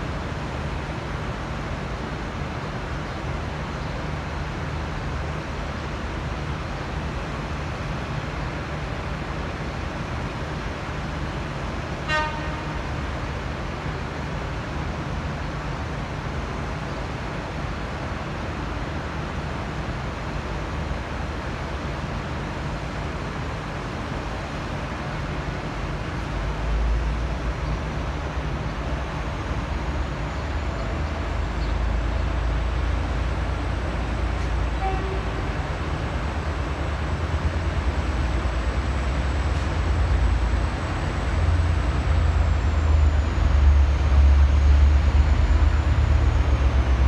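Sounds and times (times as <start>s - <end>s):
diesel engine rumble: 0.0s - 47.0s
locomotive horn toot: 12.0s - 13.0s, 34.4s - 35.7s.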